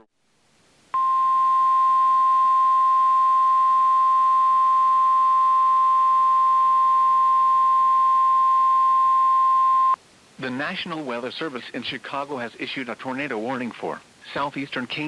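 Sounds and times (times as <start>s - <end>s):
steady high alarm tone: 1.0s - 10.0s.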